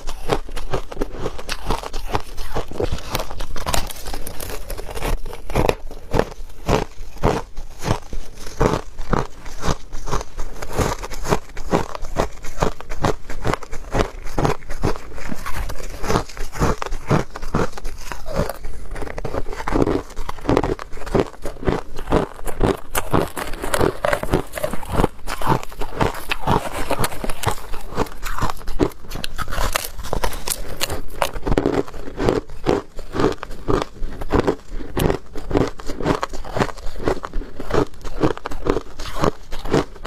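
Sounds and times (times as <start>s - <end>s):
ice being chewed crunching: 0.0s - 40.0s.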